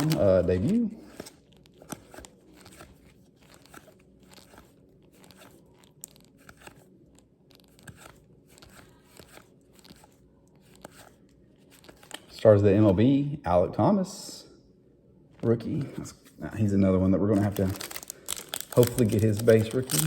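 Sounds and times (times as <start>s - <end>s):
trading cards rustling and clicking: 0.0s - 12.3s, 16.6s - 20.0s.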